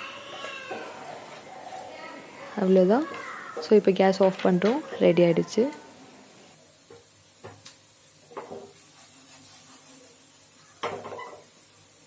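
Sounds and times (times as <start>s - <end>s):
utensil knocking on frying pan: 8.3s - 8.8s, 10.8s - 11.5s.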